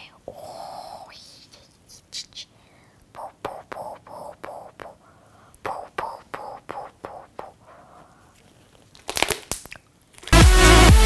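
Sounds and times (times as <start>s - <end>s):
slime squeezed by hand: 8.7s - 10.4s
electronic dance music: 10.4s - 11.0s.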